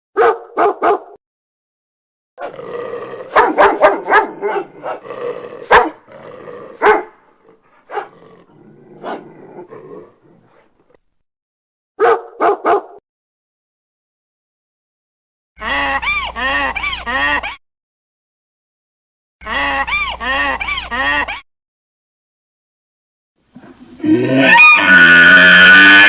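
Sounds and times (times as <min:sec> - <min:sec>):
dog barking: 0:00.2 - 0:01.2, 0:03.3 - 0:05.0, 0:05.7 - 0:06.0, 0:06.8 - 0:07.2, 0:07.8 - 0:08.2, 0:09.0 - 0:09.3, 0:12.0 - 0:13.0
dog growling: 0:02.4 - 0:11.0.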